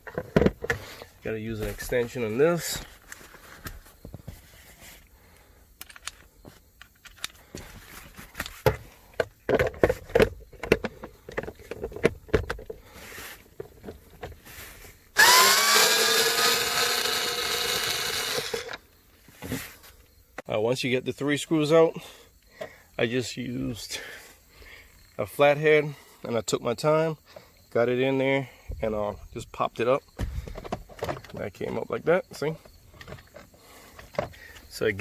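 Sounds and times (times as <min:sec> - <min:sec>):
electric screwdriver motor whining: 0:15.2 - 0:18.8.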